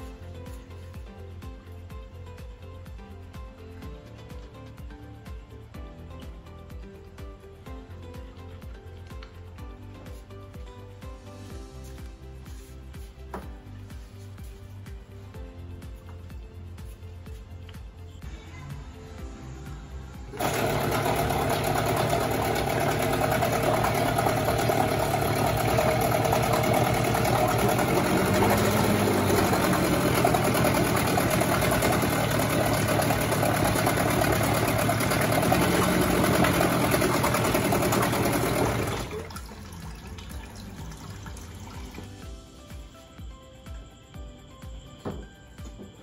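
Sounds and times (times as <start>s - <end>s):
outboard engine running: 20.4s - 40.0s.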